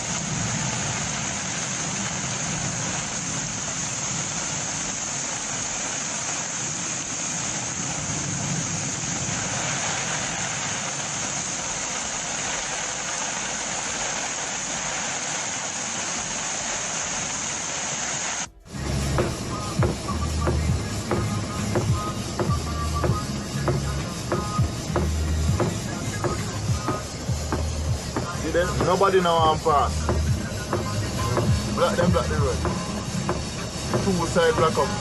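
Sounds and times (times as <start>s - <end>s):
heavy rain and floodwater rushing: 0.0s - 35.0s
high hiss: 0.0s - 35.0s
vehicle engines rumbling: 18.4s - 35.0s.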